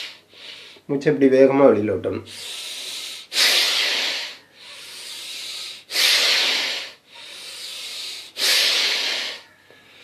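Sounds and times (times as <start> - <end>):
forceful breathing exhales and inhales: 2.3 - 9.5.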